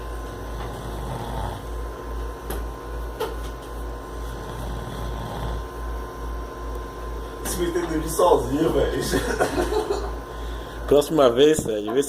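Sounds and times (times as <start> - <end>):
man snoring: 0.3 - 1.8, 4.1 - 5.8.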